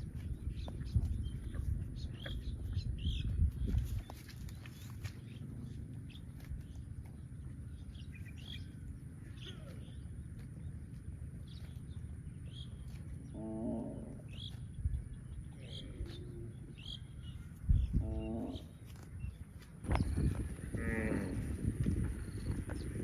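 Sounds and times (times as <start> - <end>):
small birds chirping: 0.0 - 23.0
steady low rumble: 0.0 - 23.0
calf mooing: 20.7 - 21.4.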